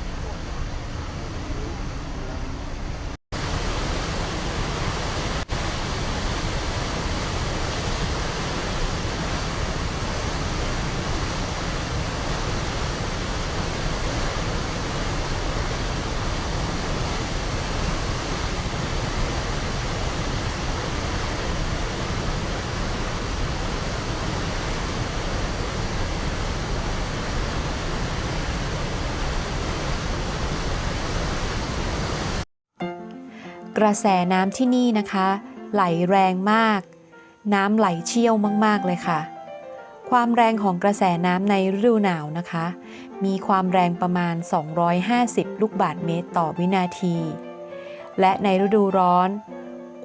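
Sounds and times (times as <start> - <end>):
waterfall roaring: 0.0 - 32.4.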